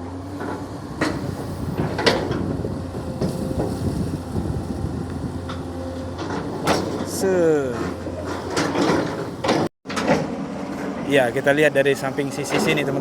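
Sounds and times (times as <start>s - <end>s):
machine knocks and clanks: 0.4s - 3.9s, 5.4s - 7.2s, 7.8s - 11.0s.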